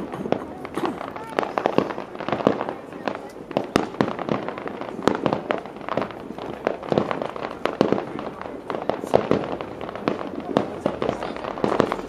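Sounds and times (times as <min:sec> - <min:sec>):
fireworks crackle: 0:00.0 - 0:12.0
fireworks shells bursting: 0:11.0 - 0:12.0.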